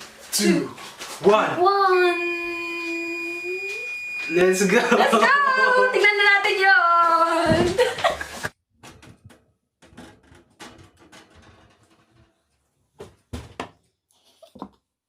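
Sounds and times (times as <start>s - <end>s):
oven door and baking tray clatter: 7.5s - 13.7s.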